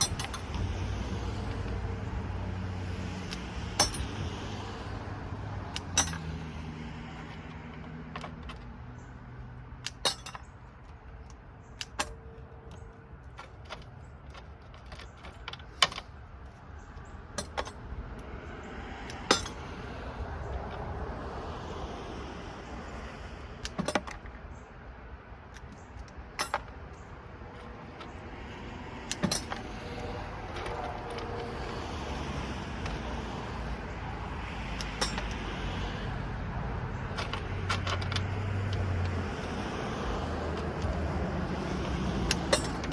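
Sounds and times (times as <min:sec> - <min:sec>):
small metal parts clinking: 0:00.0 - 0:01.7, 0:03.3 - 0:04.2, 0:05.7 - 0:06.4, 0:07.1 - 0:09.2, 0:09.8 - 0:17.9, 0:19.1 - 0:19.6, 0:23.6 - 0:24.4, 0:25.5 - 0:28.2, 0:29.0 - 0:31.8, 0:34.8 - 0:36.0, 0:37.0 - 0:42.9.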